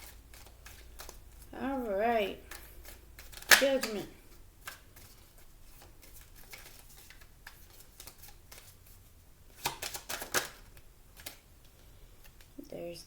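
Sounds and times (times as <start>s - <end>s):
cards rustling and clicking: 0.0s - 12.6s.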